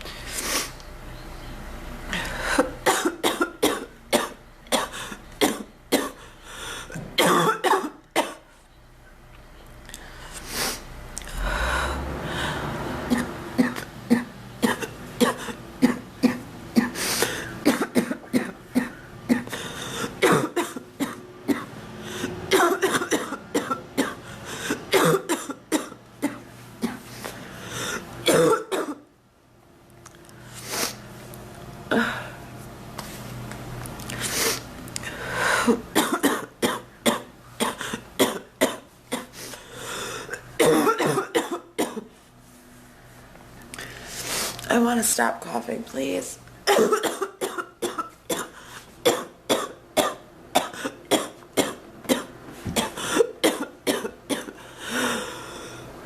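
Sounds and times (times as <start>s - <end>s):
woman coughing: 2.6s - 6.2s, 7.2s - 8.4s, 13.1s - 17.0s, 17.6s - 19.5s, 20.2s - 21.7s, 22.5s - 27.0s, 28.2s - 29.1s, 35.6s - 39.3s, 40.6s - 42.1s, 46.6s - 54.6s.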